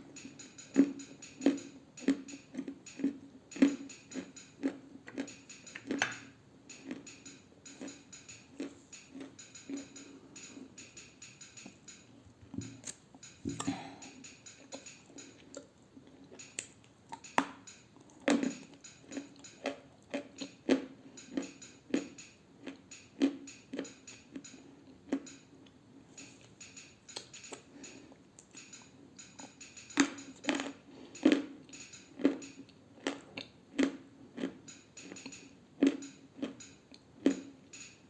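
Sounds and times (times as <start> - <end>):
clay crunching while chewed: 18.0 - 24.4, 30.0 - 31.6, 32.2 - 37.5.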